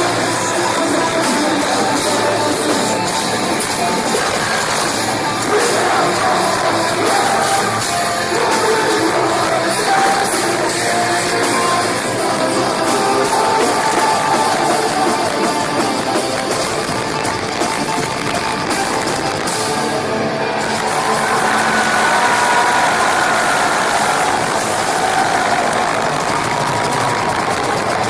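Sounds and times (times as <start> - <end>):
people singing: 0.0 - 16.2
drums: 0.0 - 28.0
electric guitars: 0.0 - 28.0.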